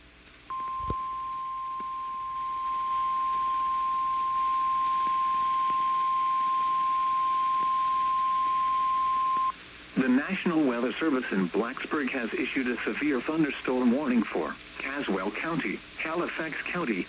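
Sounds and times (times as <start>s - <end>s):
steady high-pitched alarm tone: 0.5s - 9.5s.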